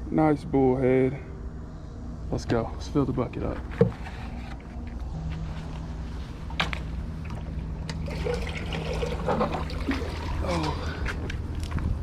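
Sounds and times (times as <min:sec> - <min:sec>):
low hum: 0:00.0 - 0:12.0
water trickling and splashing: 0:07.2 - 0:10.8.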